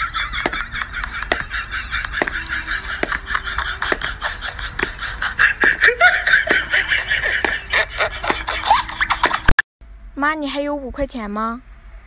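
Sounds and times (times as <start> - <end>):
laughter in bursts: 0.0 - 9.5.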